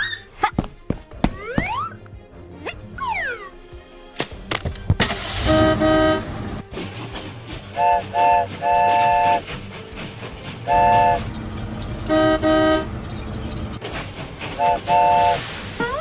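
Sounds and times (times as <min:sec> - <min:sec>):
train horn toots: 0:05.2 - 0:06.6, 0:07.7 - 0:09.7, 0:10.6 - 0:13.4, 0:14.4 - 0:16.0.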